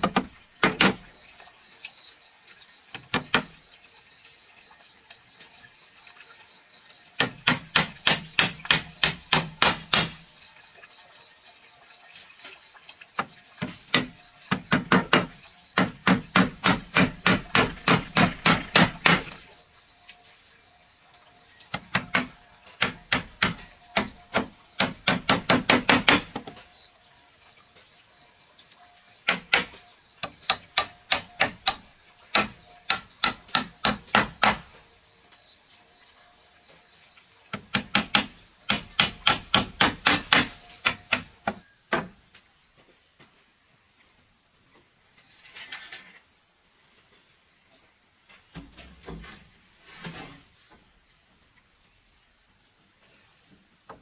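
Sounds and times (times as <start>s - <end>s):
hammer striking wood: 0.0s - 1.0s, 7.2s - 10.2s, 13.9s - 19.4s, 21.7s - 26.5s, 29.3s - 34.8s, 37.6s - 42.2s.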